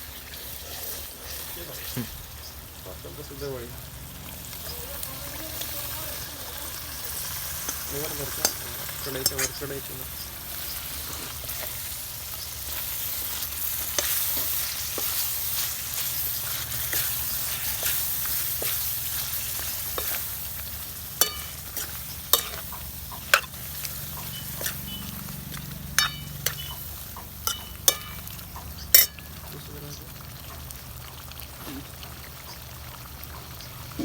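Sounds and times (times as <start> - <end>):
chicken sizzling in a pan: 0.0 - 34.0
metal spoon clinking on pan: 7.6 - 9.9, 16.9 - 20.4, 21.0 - 29.5.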